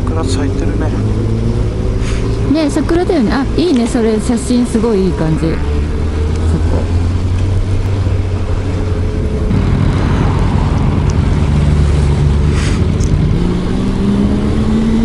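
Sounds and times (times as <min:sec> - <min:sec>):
motorcycle engine running: 0:00.0 - 0:15.0
wind over microphone: 0:07.4 - 0:15.0.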